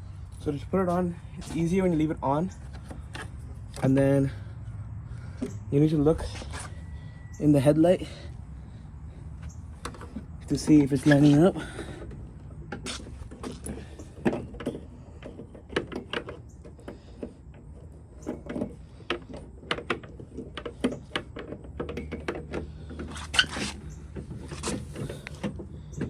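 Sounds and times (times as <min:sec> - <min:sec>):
steady low hum: 0:00.0 - 0:15.7.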